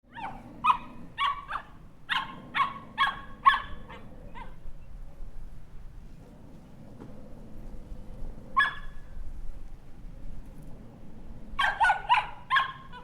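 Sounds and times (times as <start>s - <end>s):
puppy yapping: 0.1s - 4.6s, 8.6s - 9.0s, 11.6s - 13.0s.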